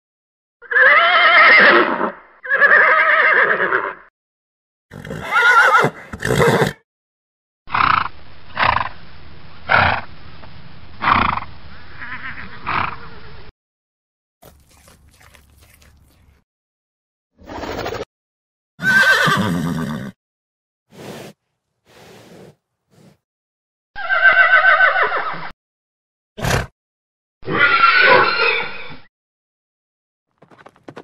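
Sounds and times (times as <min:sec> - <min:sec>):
horse neighing: 0:00.6 - 0:04.0, 0:04.9 - 0:06.8, 0:12.0 - 0:13.2, 0:18.8 - 0:20.2, 0:24.0 - 0:25.4, 0:27.4 - 0:28.9.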